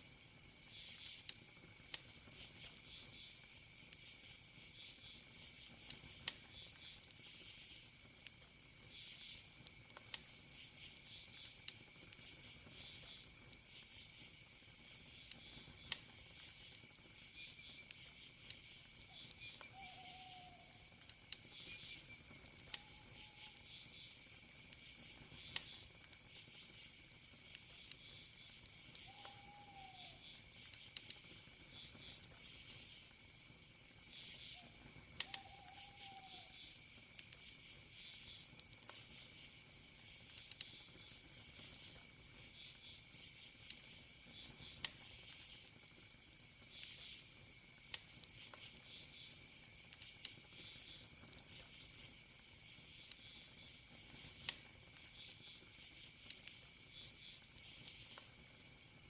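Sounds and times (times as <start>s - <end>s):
campfire crackling and popping: 0.0s - 59.0s
cricket trill: 0.0s - 59.0s
pulsing insect chirps: 10.5s - 33.2s, 34.0s - 45.6s, 46.6s - 47.3s, 48.1s - 58.2s.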